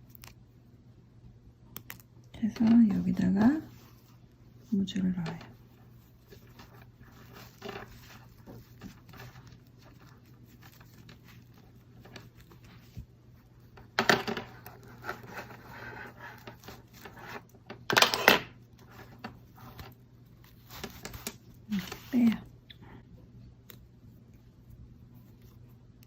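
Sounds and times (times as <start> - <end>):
cloth rustling: 5.4 - 13.8.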